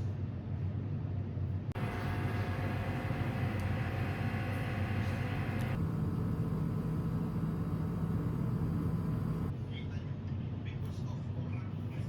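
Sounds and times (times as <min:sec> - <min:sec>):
higher hum: 0:01.8 - 0:09.5
vehicle engine and road rumble: 0:01.8 - 0:09.5.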